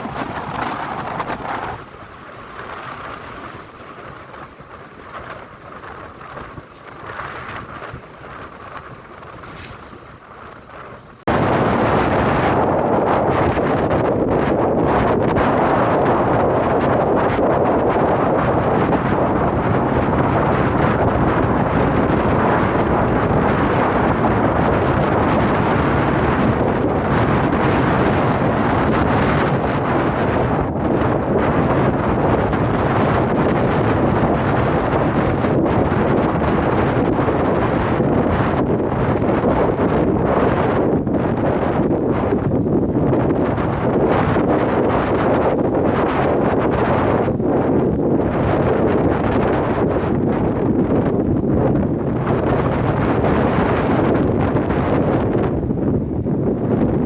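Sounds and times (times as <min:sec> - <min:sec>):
ocean waves washing in: 0:00.0 - 0:13.0
ocean waves washing ashore: 0:00.0 - 0:57.0.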